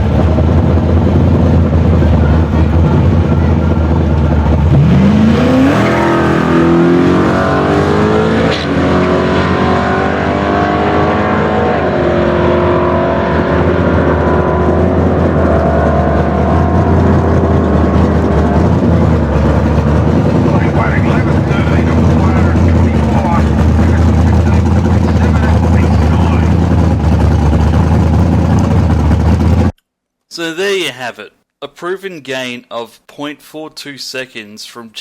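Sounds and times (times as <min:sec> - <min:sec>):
constant low drone: 0:00.0 - 0:07.0, 0:11.4 - 0:29.7
car engine accelerating: 0:00.0 - 0:29.8.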